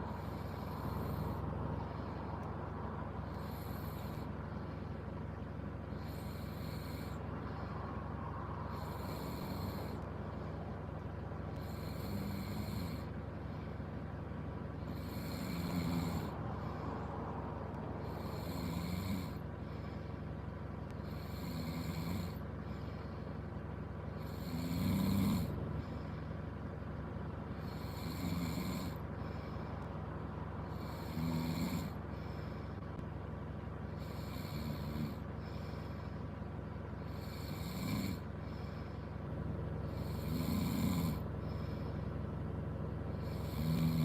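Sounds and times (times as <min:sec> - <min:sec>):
person snoring: 0:00.0 - 0:01.4, 0:03.3 - 0:04.3, 0:06.0 - 0:07.2, 0:08.6 - 0:10.0, 0:11.6 - 0:13.1, 0:14.9 - 0:16.4, 0:18.0 - 0:19.4, 0:21.0 - 0:22.4, 0:24.2 - 0:25.6, 0:27.6 - 0:29.0, 0:30.7 - 0:32.0, 0:37.0 - 0:38.2, 0:39.9 - 0:41.8, 0:43.2 - 0:44.0
steady low hum: 0:00.0 - 0:44.0.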